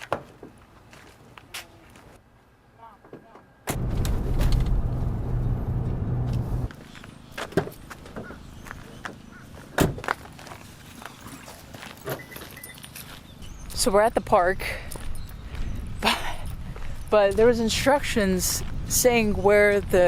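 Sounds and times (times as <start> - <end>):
vehicle engine running: 3.8 - 6.7.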